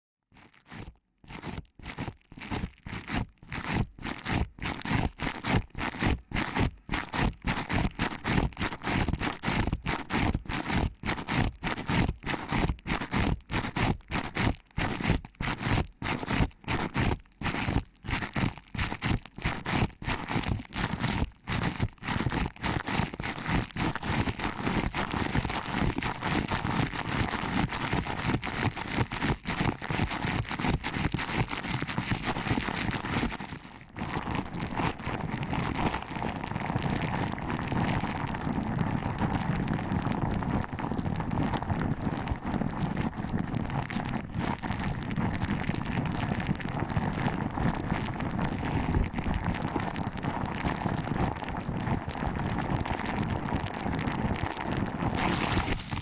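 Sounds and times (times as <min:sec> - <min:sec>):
fingers rubbing microphone: 0:00.4 - 0:39.4, 0:54.4 - 0:56.0.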